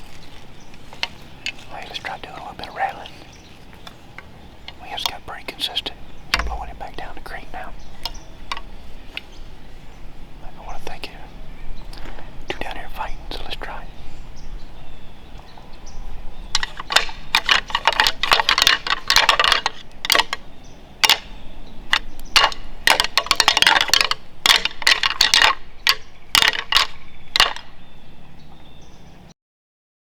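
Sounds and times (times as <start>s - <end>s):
antlers clacking together: 0.0s - 11.3s, 16.4s - 27.9s.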